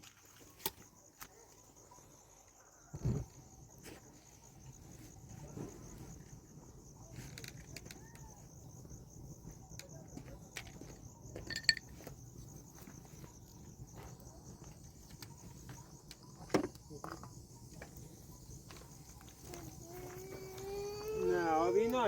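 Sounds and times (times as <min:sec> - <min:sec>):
crickets chirring: 0:00.0 - 0:22.0
ringing clink: 0:11.4 - 0:11.9.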